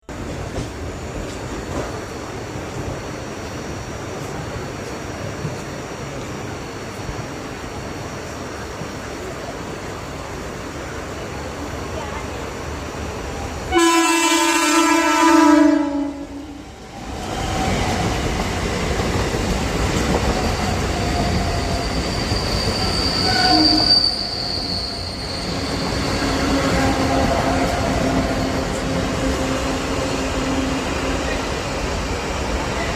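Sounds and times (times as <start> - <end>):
train wheels rushing on rail: 0.0 - 32.9
high wheel squeal: 20.5 - 29.4.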